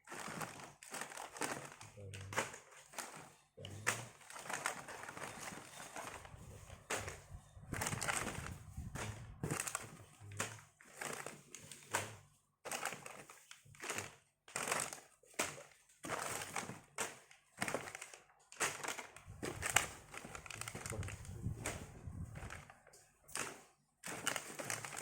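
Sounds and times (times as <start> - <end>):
plastic packaging crinkling: 0.0 - 25.0.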